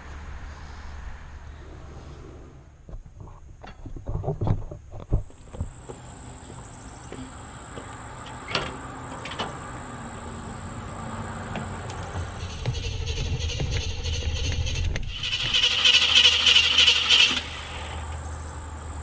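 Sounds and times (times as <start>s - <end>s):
low hum: 9.3s - 16.8s.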